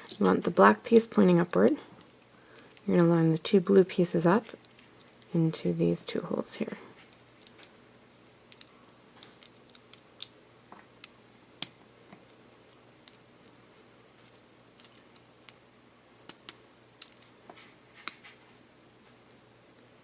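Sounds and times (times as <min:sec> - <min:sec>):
plastic parts clicking: 0:08.5 - 0:10.3, 0:14.2 - 0:15.6.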